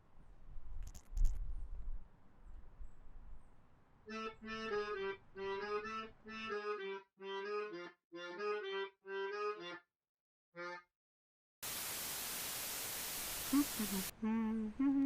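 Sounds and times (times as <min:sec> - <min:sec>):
accordion chords: 0:04.1 - 0:09.9, 0:10.6 - 0:10.9.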